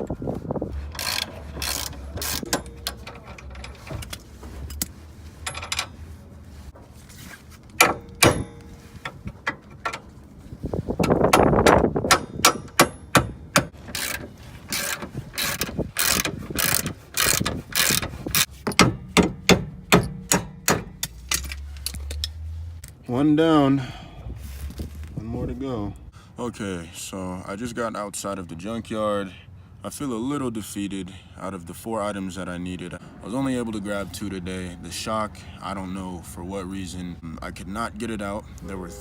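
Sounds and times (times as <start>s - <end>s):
ratchet wrench clicking: 0.9s - 2.8s, 12.1s - 18.5s.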